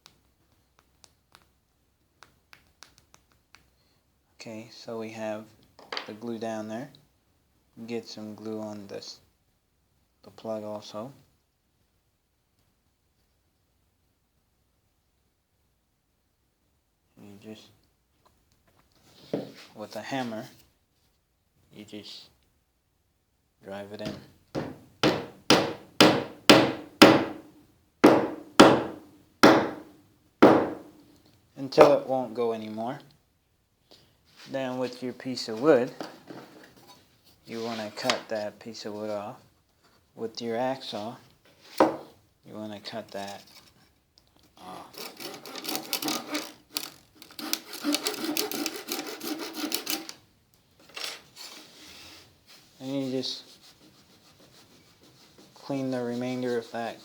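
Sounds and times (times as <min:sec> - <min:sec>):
hammer tapping wooden plug: 0:24.0 - 0:31.0
hacksaw cutting wood: 0:24.1 - 0:30.9, 0:44.9 - 0:50.2.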